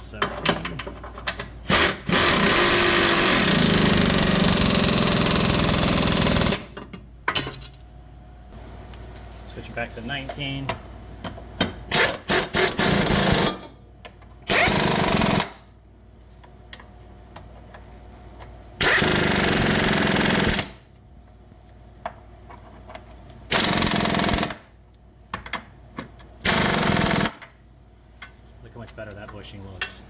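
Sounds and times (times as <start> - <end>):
impact wrench hammering bolts: 0.2 - 7.7, 18.8 - 20.7, 26.0 - 27.5.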